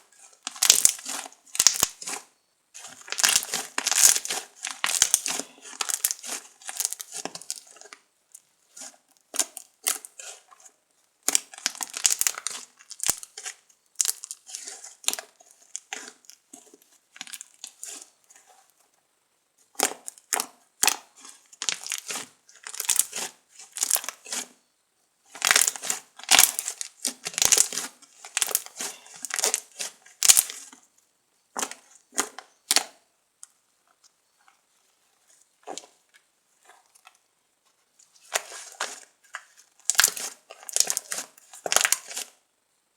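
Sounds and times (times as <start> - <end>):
slime crackling and popping: 0.4 - 2.2, 2.9 - 8.0, 11.2 - 16.4, 19.8 - 24.4, 25.4 - 30.7, 38.3 - 42.3.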